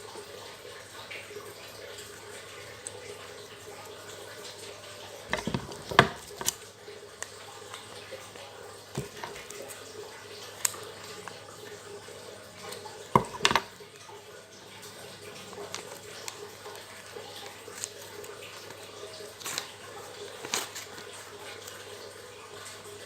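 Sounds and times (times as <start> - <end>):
packaging crinkling: 15.5 - 21.8.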